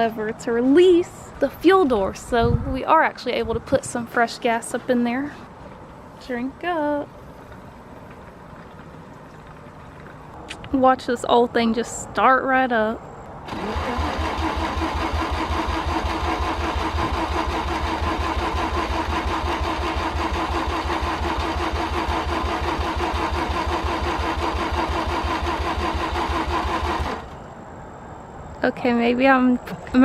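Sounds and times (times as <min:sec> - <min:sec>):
starter motor cranking engine: 0:13.5 - 0:27.5.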